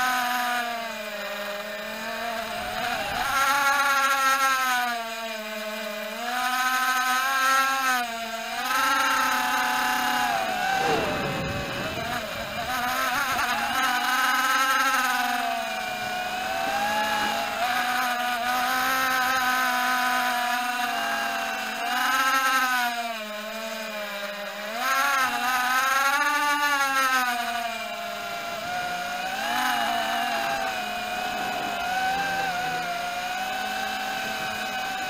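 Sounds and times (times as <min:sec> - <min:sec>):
quadcopter motors whining: 0:00.0 - 0:35.0.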